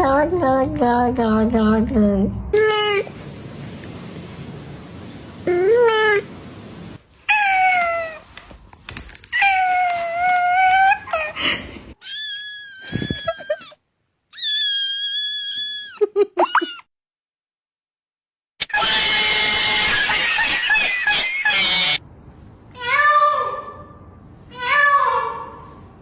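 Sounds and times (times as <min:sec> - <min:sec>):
high-pitched cat cries: 0:05.5 - 0:06.3, 0:07.3 - 0:08.2, 0:12.0 - 0:16.0, 0:18.6 - 0:22.0.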